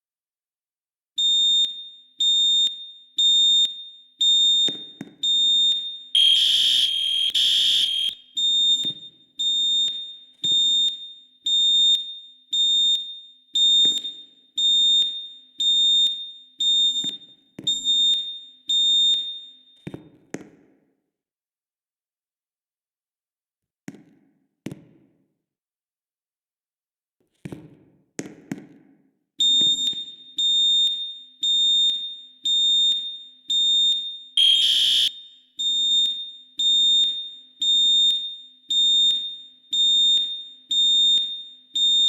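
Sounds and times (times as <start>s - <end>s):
fire alarm pulsing high tone: 6.2s - 8.2s, 31.6s - 37.0s
loud fire alarm blast: 6.2s - 8.2s, 34.4s - 35.3s.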